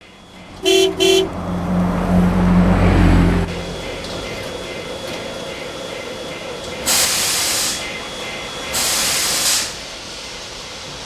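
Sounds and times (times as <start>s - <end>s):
loud low rumble: 0.3s - 5.0s
steam whistle toots: 0.6s - 1.4s, 6.8s - 9.8s
steam hissing: 3.5s - 11.0s.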